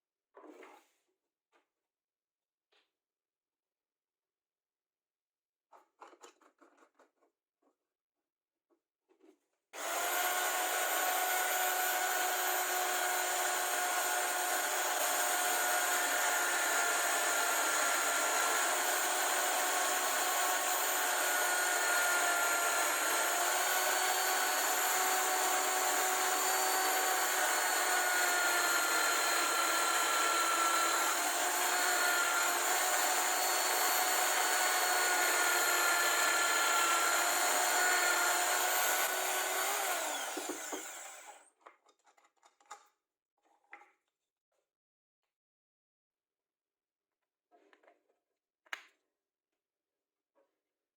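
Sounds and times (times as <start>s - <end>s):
electric power tool whine: 9.8s - 41.5s.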